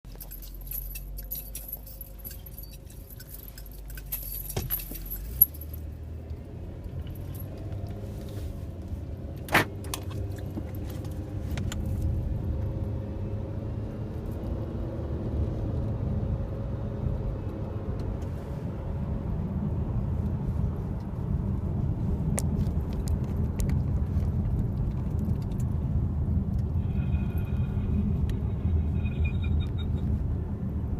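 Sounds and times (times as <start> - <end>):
car driving rumble: 0.0 - 30.9
jingling rattle: 0.1 - 5.9.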